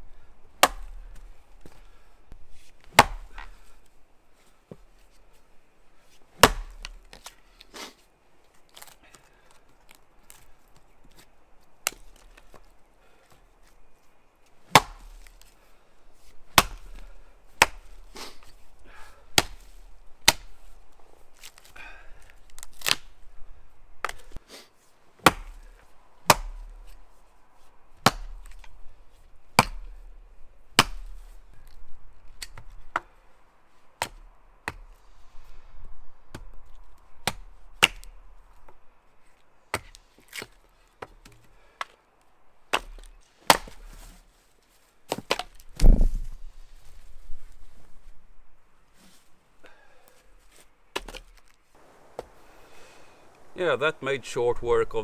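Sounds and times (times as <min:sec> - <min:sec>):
axe chopping wood: 0:00.6 - 0:02.0, 0:02.8 - 0:03.8, 0:06.4 - 0:07.4, 0:11.8 - 0:12.7, 0:14.7 - 0:15.6, 0:16.2 - 0:20.8, 0:21.4 - 0:23.2, 0:24.0 - 0:24.4, 0:25.2 - 0:27.0, 0:28.0 - 0:28.8, 0:29.6 - 0:33.2, 0:34.0 - 0:35.0, 0:36.3 - 0:38.8, 0:39.7 - 0:42.0, 0:42.7 - 0:44.2, 0:45.1 - 0:46.5, 0:50.9 - 0:52.5.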